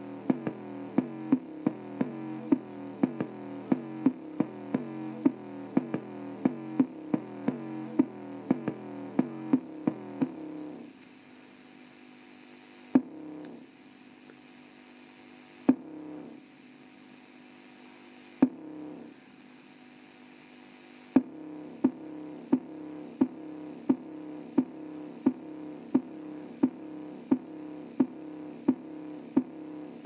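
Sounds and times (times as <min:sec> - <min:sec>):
bass beat hits from small speaker: 0:00.0 - 0:10.6, 0:13.0 - 0:13.4, 0:15.7 - 0:16.1, 0:21.2 - 0:29.8.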